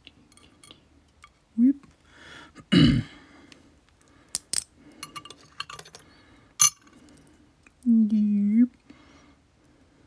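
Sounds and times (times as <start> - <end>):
metal lock parts clicking: 4.4 - 6.0, 6.6 - 6.8.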